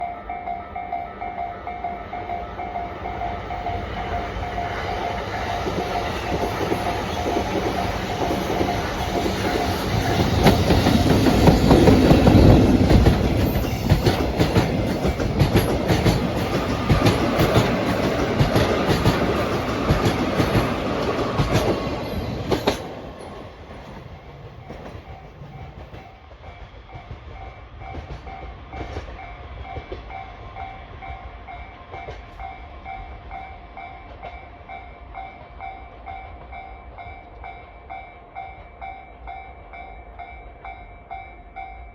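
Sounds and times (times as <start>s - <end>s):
freight train rumbling: 0.0s - 41.9s
wheels clacking over rail joints: 3.4s - 29.1s.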